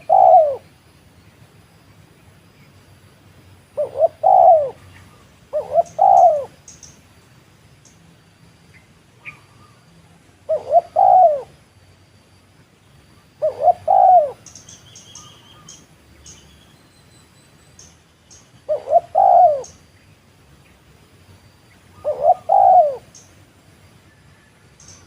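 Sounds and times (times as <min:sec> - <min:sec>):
dove cooing: 0:00.0 - 0:00.7, 0:03.8 - 0:06.6, 0:10.5 - 0:11.6, 0:13.4 - 0:14.6, 0:18.7 - 0:19.8, 0:21.9 - 0:23.2
small birds chirping: 0:00.0 - 0:25.0.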